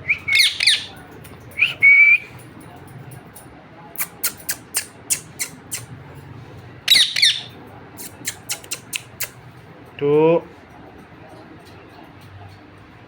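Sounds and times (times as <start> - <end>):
parrot squawking: 0.2 - 0.9, 4.0 - 5.9, 6.9 - 9.3
parrot clicks: 8.0 - 9.4.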